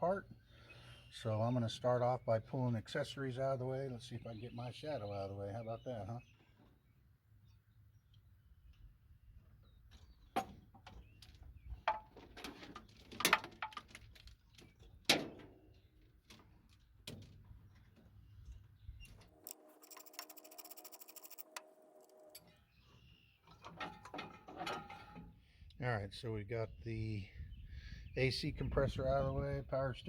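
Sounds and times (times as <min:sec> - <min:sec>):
hand tools clinking on metal: 0:23.5 - 0:25.2.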